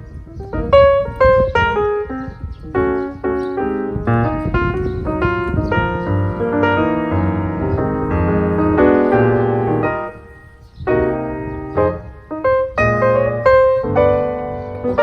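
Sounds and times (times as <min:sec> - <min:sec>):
piano-led background music: 0:00.0 - 0:15.0.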